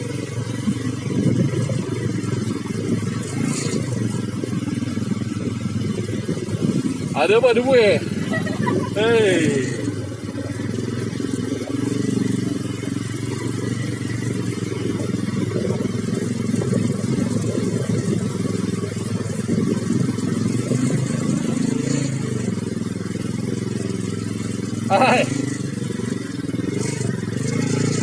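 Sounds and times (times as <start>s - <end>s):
vehicle engine running: 0.0s - 28.0s.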